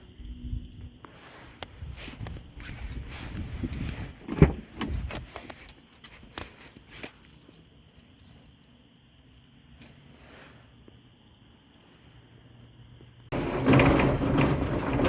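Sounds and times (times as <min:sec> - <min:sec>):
objects rustling and clattering: 0:13.3 - 0:15.0.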